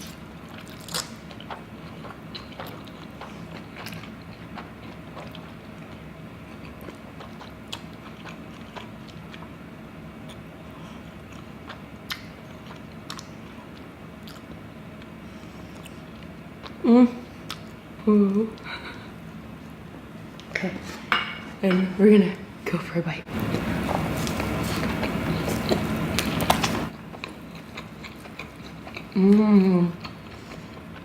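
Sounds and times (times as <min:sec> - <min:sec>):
chewing and biting: 0:00.0 - 0:09.5, 0:11.2 - 0:14.6, 0:23.4 - 0:29.2
steady low hum: 0:00.0 - 0:31.0.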